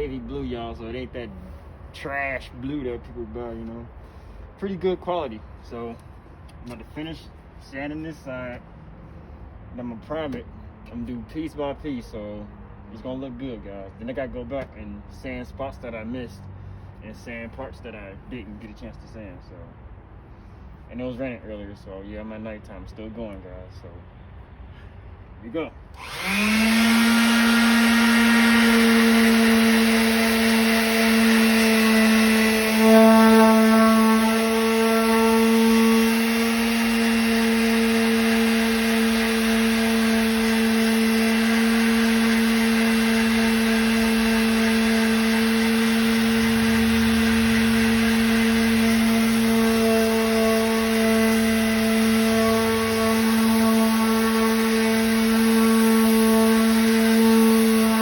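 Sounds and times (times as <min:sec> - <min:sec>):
electric power sander running: 0:25.9 - 0:58.0.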